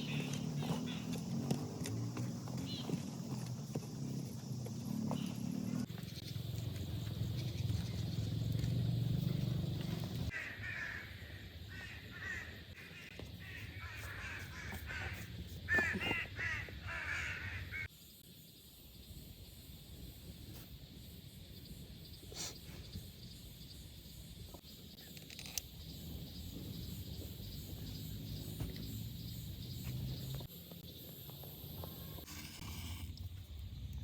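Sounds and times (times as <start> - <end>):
birds cawing: 10.3 - 17.9.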